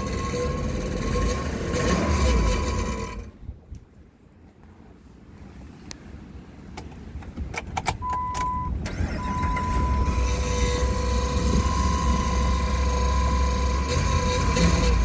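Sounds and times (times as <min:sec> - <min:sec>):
engine starting and idling: 0:00.0 - 0:03.4, 0:07.8 - 0:15.0
high constant whine: 0:07.5 - 0:15.0.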